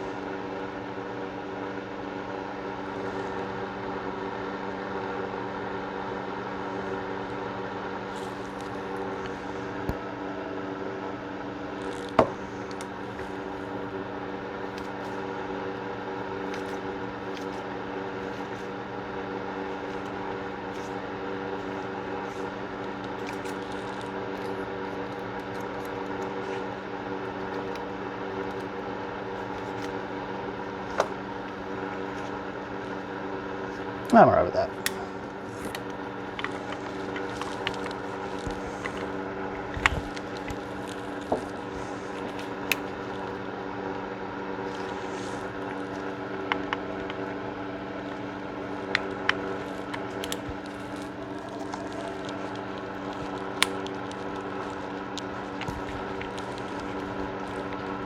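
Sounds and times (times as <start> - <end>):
steady machine hum: 0.0 - 58.0.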